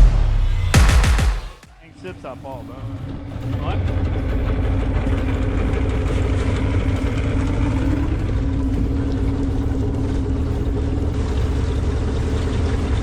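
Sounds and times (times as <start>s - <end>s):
outboard motor running: 2.9s - 13.0s.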